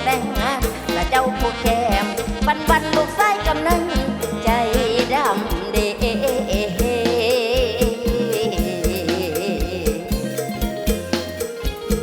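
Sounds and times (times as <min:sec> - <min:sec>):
steady drum beat: 0:00.0 - 0:12.0
wavering lead melody: 0:00.0 - 0:12.0.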